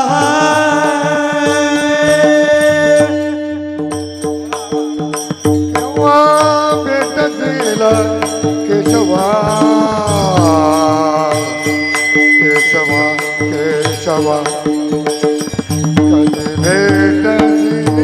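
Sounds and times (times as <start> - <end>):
drum strokes: 0.0 - 18.0
man singing wavering note: 5.8 - 15.2.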